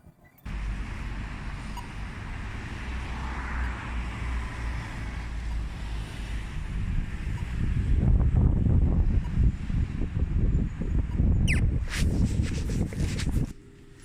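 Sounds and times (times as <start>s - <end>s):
wind rumbling on microphone: 0.5s - 13.6s.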